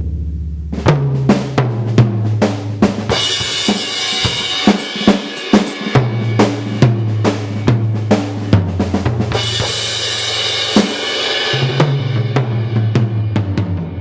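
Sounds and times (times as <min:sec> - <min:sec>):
drum beat with reverb: 0:00.0 - 0:14.0
cymbal crash: 0:09.3 - 0:14.0.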